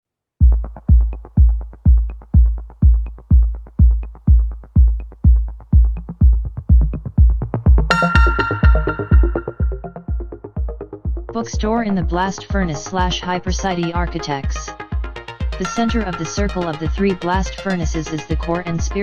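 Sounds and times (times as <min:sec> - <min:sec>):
electronic music kick drum: 0:00.4 - 0:19.0
bright synthesizer chord: 0:07.9 - 0:10.3.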